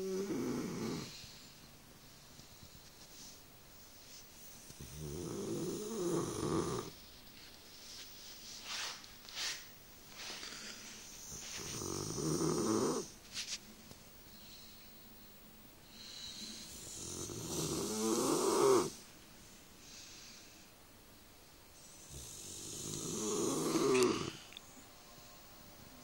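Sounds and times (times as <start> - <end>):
dog snoring: 0.0 - 1.5, 4.6 - 7.0, 10.5 - 13.2, 15.9 - 19.0, 21.8 - 24.6.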